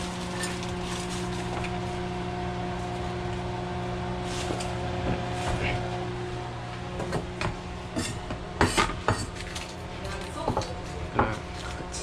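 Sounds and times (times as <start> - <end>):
seeds crackling in hot oil: 0.0 - 4.9
kitchen appliance motor hum: 0.0 - 12.0.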